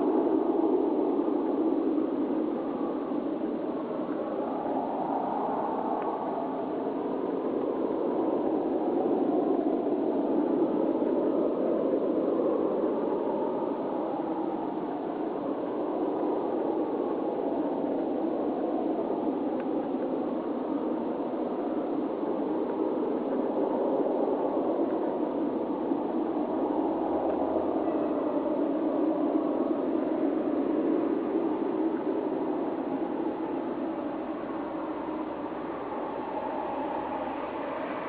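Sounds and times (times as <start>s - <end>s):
steady roaring drone: 32.2s - 38.0s.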